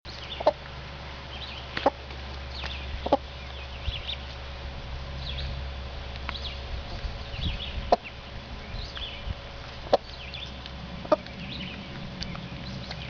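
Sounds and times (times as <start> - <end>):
ducklings peeping: 0.1 - 13.0
steady low hum: 0.1 - 13.0
hen clucking: 0.3 - 0.6, 1.7 - 2.0, 2.9 - 4.2, 6.9 - 8.2, 8.9 - 13.0.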